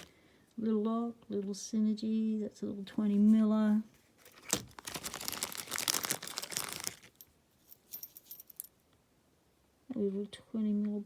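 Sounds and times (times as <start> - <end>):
packaging crinkling and tearing: 4.1 - 7.3.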